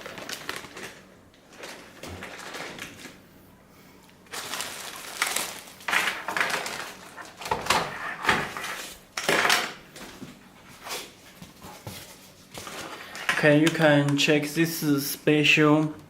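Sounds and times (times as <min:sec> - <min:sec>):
plastic packaging rustling: 0:00.0 - 0:03.2, 0:04.2 - 0:14.1.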